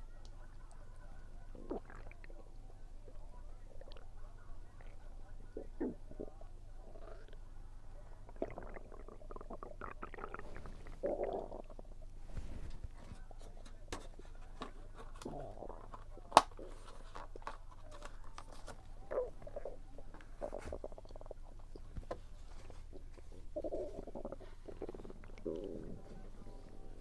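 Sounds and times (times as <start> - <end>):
stomach gurgling and rumbling: 1.5 - 2.4, 4.8 - 7.4, 8.2 - 12.7, 15.2 - 17.5, 19.0 - 27.0.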